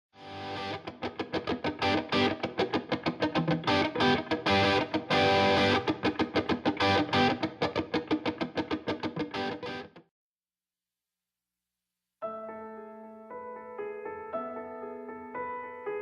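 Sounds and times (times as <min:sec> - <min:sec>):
distorted electric guitar riff: 0:00.2 - 0:10.0.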